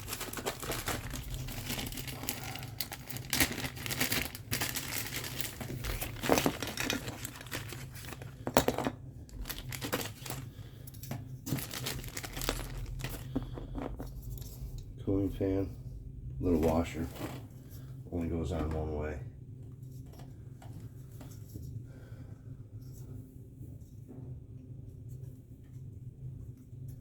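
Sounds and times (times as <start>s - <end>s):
small parts clicking and knocking: 0.0s - 14.5s
packaging crinkling and rustling: 0.0s - 14.8s
low steady hum: 0.0s - 27.0s.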